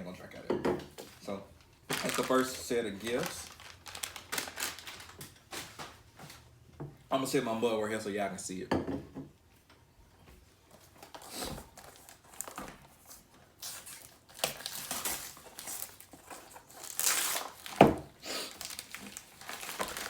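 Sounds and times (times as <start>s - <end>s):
paper crinkling and tearing: 1.9s - 6.0s, 11.0s - 20.0s.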